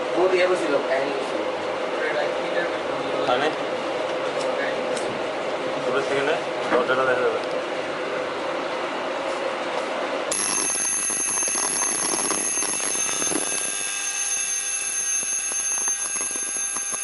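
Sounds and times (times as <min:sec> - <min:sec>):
fire alarm buzzer: 0:10.3 - 0:17.0.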